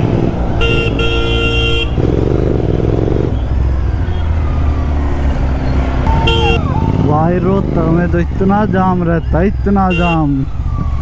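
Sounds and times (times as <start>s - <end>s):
motorcycle engine running: 0.0s - 9.6s
traffic: 0.0s - 11.0s
vehicle horn honking: 0.6s - 2.0s, 6.1s - 6.7s, 9.9s - 10.3s.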